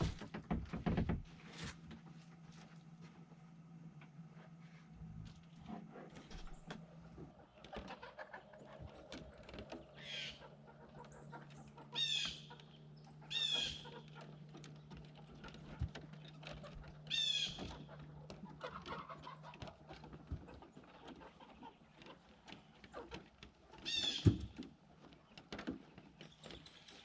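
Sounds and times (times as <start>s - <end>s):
low steady hum: 0.0s - 27.0s
chickens calling: 6.3s - 27.0s.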